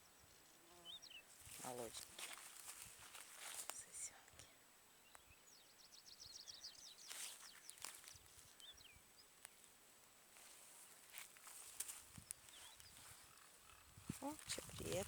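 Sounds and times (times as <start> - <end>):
soft rustles: 1.3 - 4.2, 10.4 - 15.0
small bird trilling and chirping: 12.2 - 15.0.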